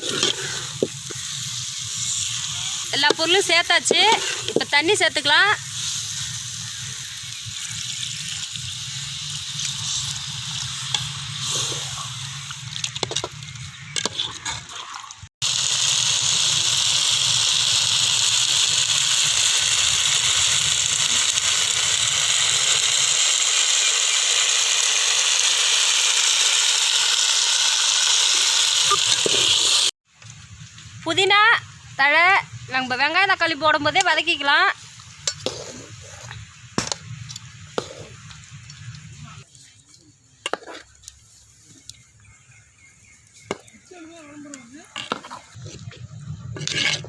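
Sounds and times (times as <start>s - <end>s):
loud steady sizzle: 0.0s - 39.5s.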